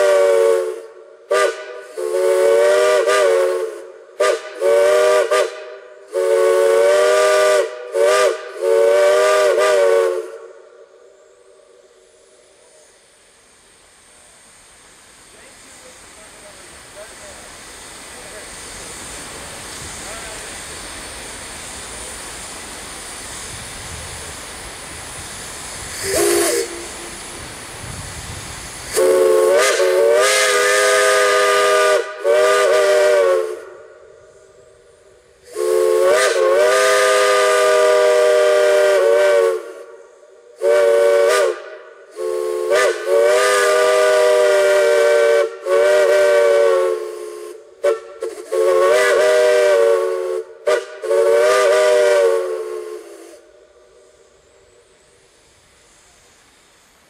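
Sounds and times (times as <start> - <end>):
steam whistle blasts: 0.0 - 12.9, 25.9 - 27.5, 28.8 - 56.6
steady steam hiss: 0.0 - 57.0.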